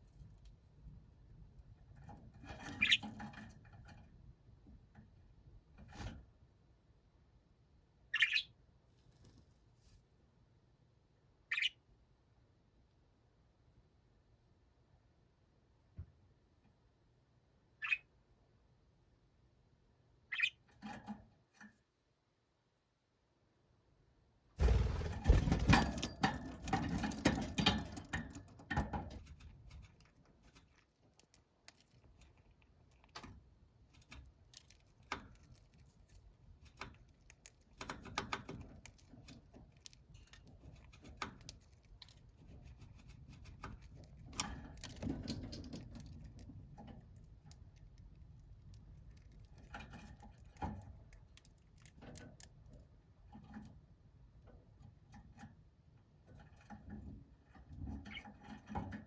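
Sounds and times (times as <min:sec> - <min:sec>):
soft budgerigar chirps: 0:02.8 - 0:03.0, 0:08.1 - 0:08.6, 0:11.5 - 0:11.8, 0:17.8 - 0:18.1, 0:20.3 - 0:20.7
beaks and claws tapping: 0:25.2 - 0:52.4.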